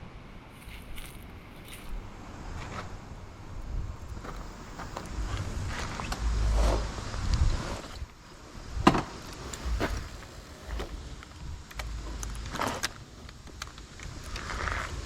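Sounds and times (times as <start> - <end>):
exhaust cracks: 0.6 - 15.0
motorcycle engine revving: 4.2 - 13.1.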